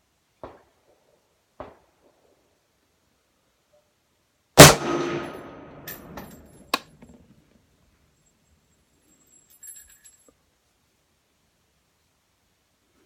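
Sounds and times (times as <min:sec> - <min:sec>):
loud rifle shot: 0:04.6 - 0:05.9
metallic clinks: 0:05.3 - 0:06.8, 0:08.1 - 0:10.4.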